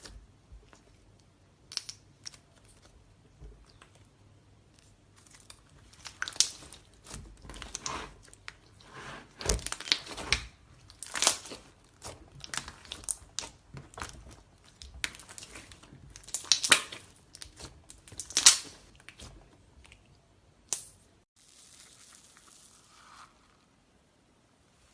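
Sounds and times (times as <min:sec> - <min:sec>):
slime crackling when squeezed: 0:09.6 - 0:19.3.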